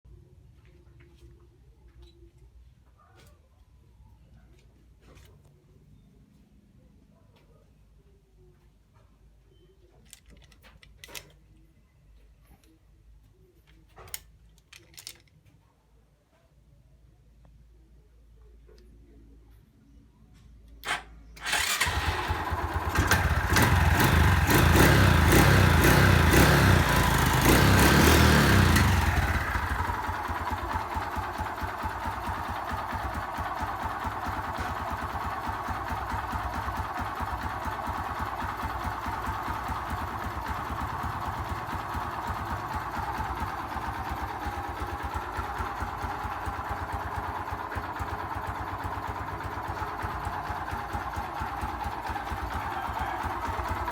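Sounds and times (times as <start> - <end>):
motorcycle engine starting and idling: 20.6 - 53.9
rapid engine ticking: 21.4 - 53.9.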